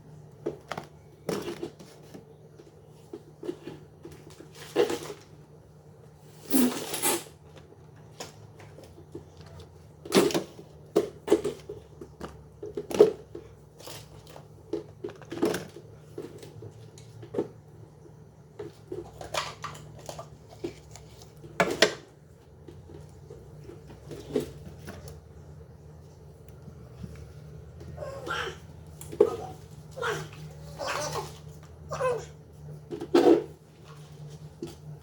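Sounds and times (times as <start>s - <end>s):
food containers knocking and clattering: 0.2s - 5.5s, 7.5s - 17.7s, 18.4s - 25.4s.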